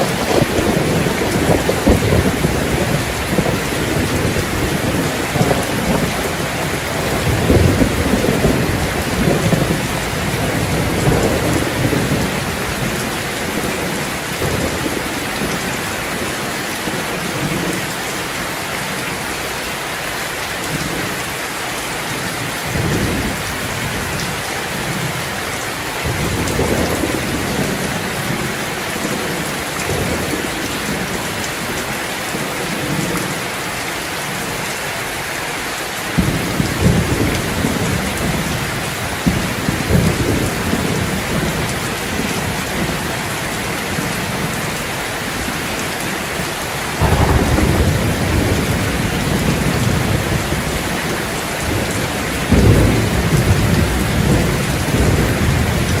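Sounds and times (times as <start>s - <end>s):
thunder rumbling: 0.0s - 17.8s, 46.9s - 56.0s
rain falling on terrace: 0.0s - 56.0s.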